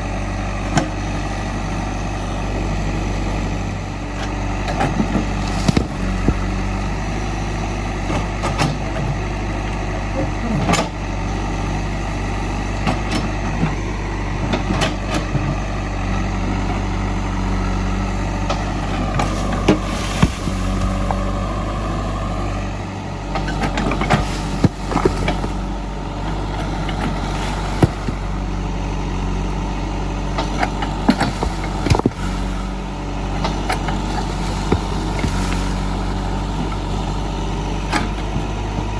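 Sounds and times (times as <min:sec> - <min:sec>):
diesel engine running: 0:00.0 - 0:38.9
knocks and clanks: 0:23.3 - 0:28.6, 0:30.4 - 0:36.8.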